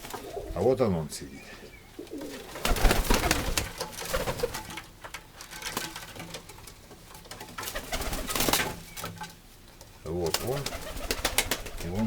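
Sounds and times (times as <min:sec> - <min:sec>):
pigeons cooing: 0:00.0 - 0:04.7, 0:10.1 - 0:12.0.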